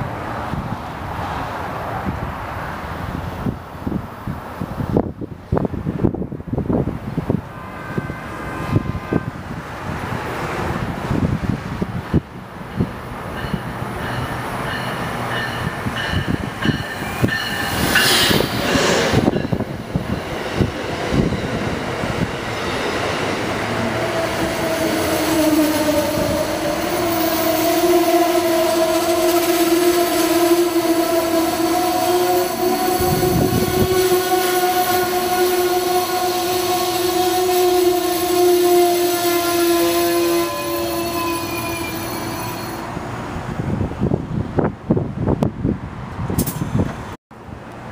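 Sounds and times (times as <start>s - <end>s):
wheels squealing on rails: 12.0s - 43.0s.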